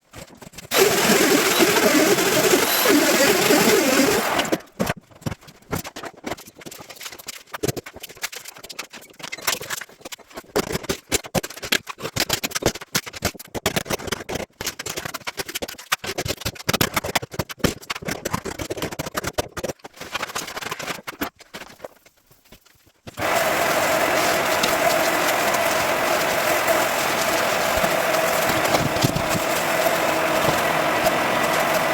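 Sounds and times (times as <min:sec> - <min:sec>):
power tool running: 0:00.7 - 0:04.7, 0:23.2 - 0:31.9.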